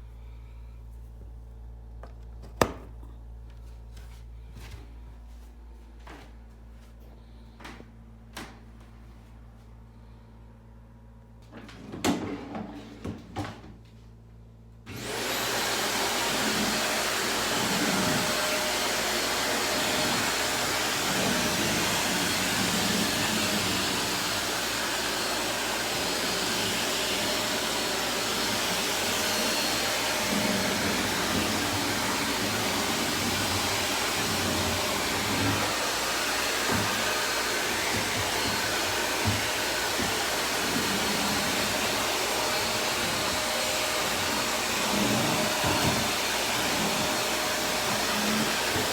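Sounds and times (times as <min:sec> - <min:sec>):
vacuum cleaner running: 0:14.8 - 0:48.9.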